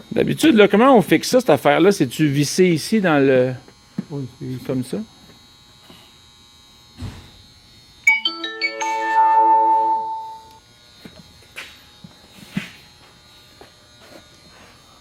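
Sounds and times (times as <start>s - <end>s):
electronic chime: 8.1s - 10.6s.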